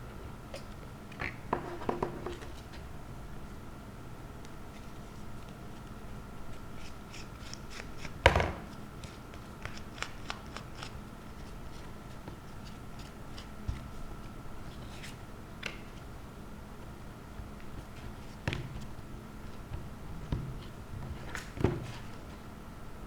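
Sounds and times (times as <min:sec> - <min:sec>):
paper rustling and clicking: 0:07.4 - 0:13.9.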